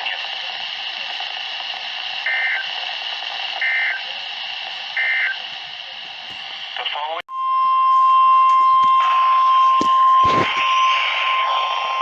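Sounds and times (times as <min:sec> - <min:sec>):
radio static hiss: 0:00.0 - 0:07.3, 0:08.6 - 0:12.0
faint constant whine: 0:00.0 - 0:12.0
warbling digital data bursts: 0:00.1 - 0:06.9.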